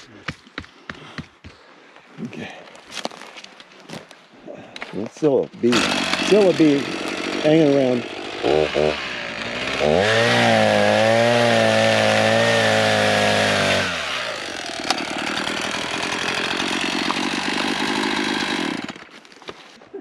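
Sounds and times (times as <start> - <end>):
chainsaw cutting log: 5.6 - 19.6.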